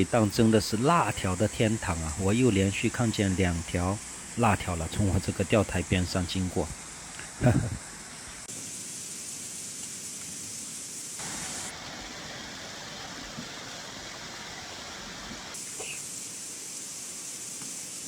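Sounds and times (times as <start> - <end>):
stream rushing: 9.0 - 15.8.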